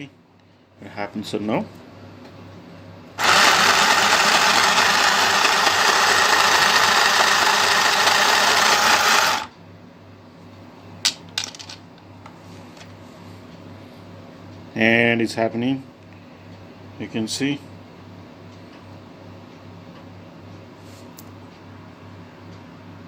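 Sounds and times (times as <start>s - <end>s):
sewing machine rattling: 3.2s - 9.5s.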